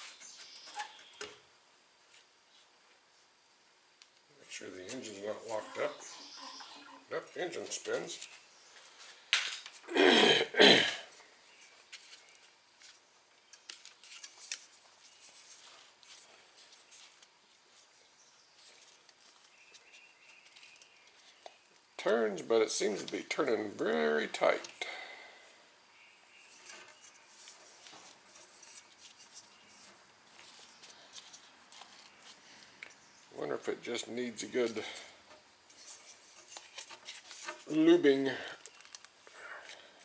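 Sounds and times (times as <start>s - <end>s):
faint clicks and scrapes of handling: 11.6s - 18.0s, 26.4s - 33.0s, 34.6s - 37.8s, 38.6s - 39.9s.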